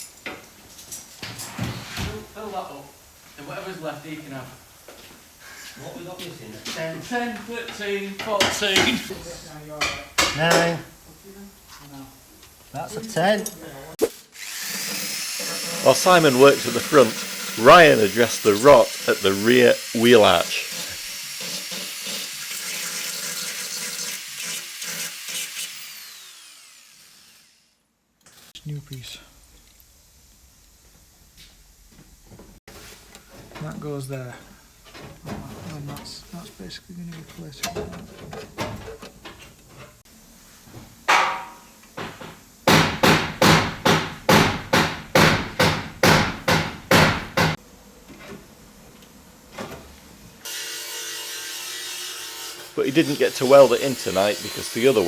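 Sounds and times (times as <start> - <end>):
steady hiss: 0.0 - 14.0, 15.8 - 22.3, 28.5 - 34.9, 52.8 - 55.0
power tool hissing on metal: 14.2 - 27.8, 50.4 - 55.0
power tool spinning down whine: 14.4 - 27.6
hammer on steel panel: 41.1 - 41.6, 42.7 - 47.6.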